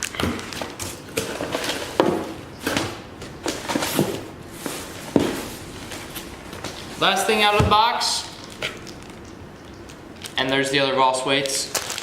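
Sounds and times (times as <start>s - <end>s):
packaging rustling in cardboard box: 11.7s - 12.0s.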